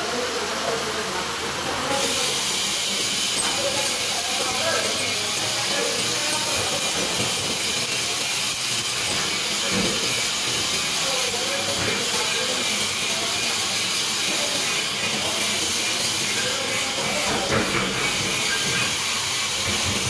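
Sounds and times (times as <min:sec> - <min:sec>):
welding arc hissing and crackling: 0:00.0 - 0:20.0.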